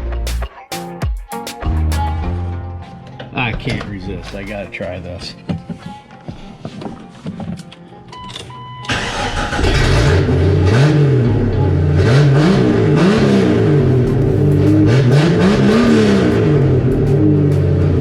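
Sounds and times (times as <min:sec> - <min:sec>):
car engine starting: 0:08.2 - 0:18.0
loud engine revving: 0:08.9 - 0:18.0.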